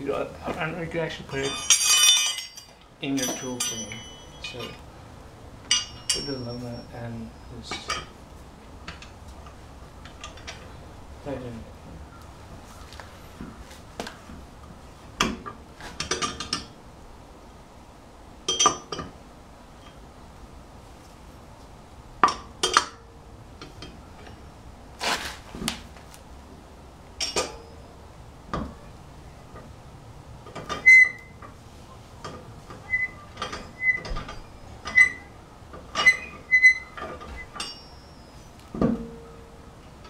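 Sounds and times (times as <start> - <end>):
metallic clinks of lug nuts: 1.3 - 4.8, 5.7 - 7.0, 18.5 - 19.1, 22.2 - 24.5, 27.2 - 27.8, 35.9 - 38.3.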